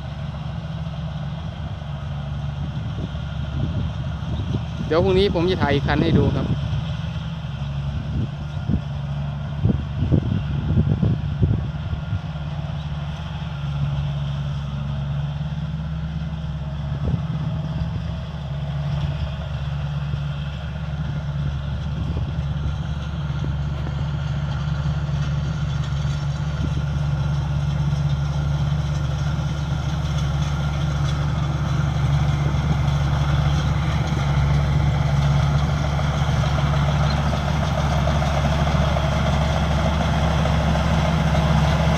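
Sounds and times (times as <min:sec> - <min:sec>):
diesel engine running under load: 0:00.0 - 0:41.9.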